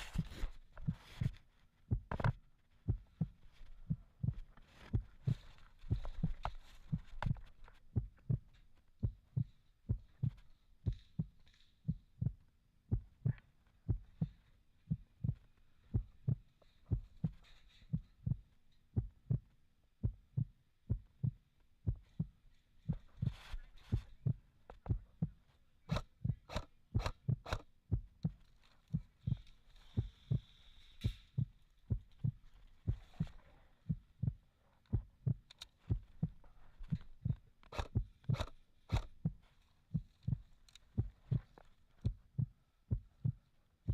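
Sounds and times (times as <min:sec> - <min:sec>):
rhythmic low thumps: 0:00.1 - 0:02.3, 0:02.9 - 0:43.9
sharp clicks: 0:25.9 - 0:28.4, 0:36.8 - 0:39.3.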